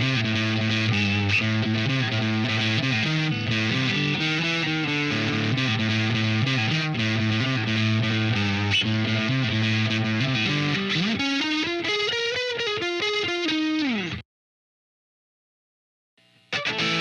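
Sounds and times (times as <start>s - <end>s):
electric guitar with effects: 0.0s - 14.2s, 16.4s - 17.0s.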